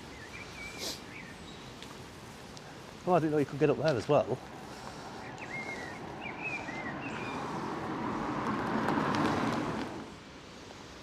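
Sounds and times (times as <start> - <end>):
car driving past: 4.2 - 10.2
bird chirps: 4.4 - 7.8.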